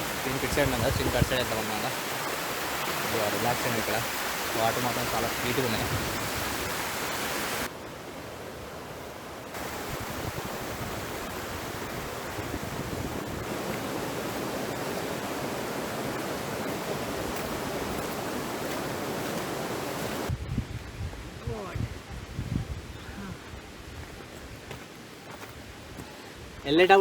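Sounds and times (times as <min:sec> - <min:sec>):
stream water flowing: 0:00.0 - 0:20.3.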